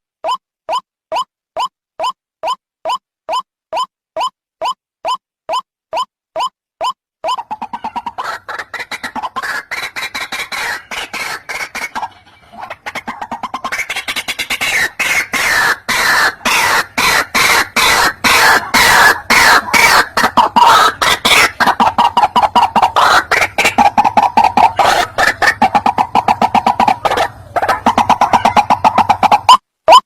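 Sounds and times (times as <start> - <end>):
bird harsh calling: 7.4 - 29.6.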